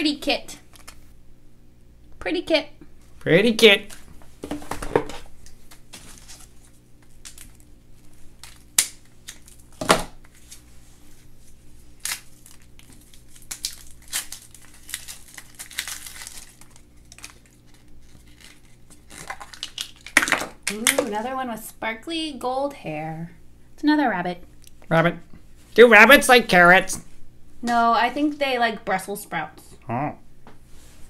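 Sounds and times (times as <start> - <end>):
packaging crinkling and tearing: 0.6 - 1.1, 4.7 - 21.2.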